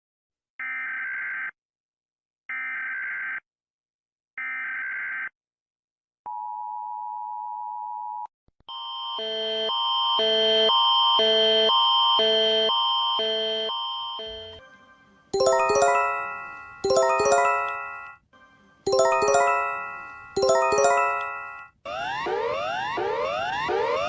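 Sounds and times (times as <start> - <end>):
alarm of alternating stacked tones: 15.4 - 18.2, 18.9 - 24.0.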